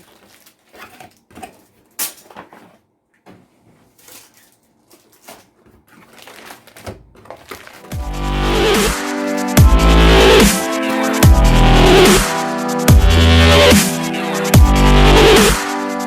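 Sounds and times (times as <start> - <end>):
electronic music with heavy bass: 7.9 - 16.0.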